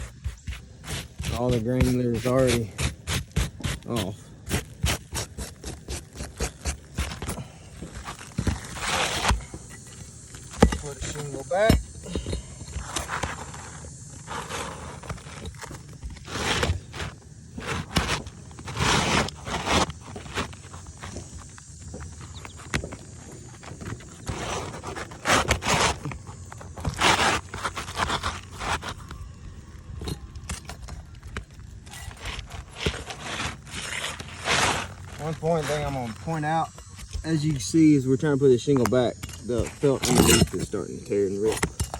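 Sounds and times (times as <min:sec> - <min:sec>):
roof shingle tapping and scraping: 0:00.0 - 0:41.9
felt tearing: 0:30.8 - 0:36.3.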